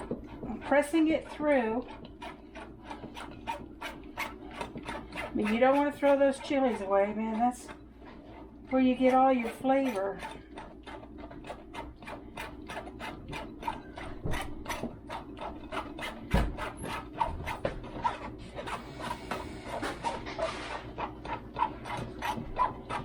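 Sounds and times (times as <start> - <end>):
dull knock: 16.3 - 16.7.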